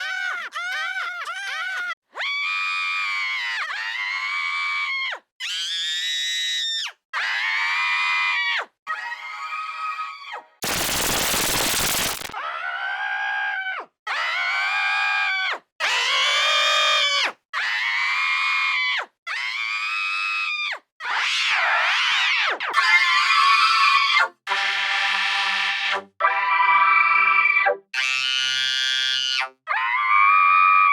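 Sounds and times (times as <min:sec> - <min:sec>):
cartoon scream with voice effects: 0:26.3 - 0:30.9.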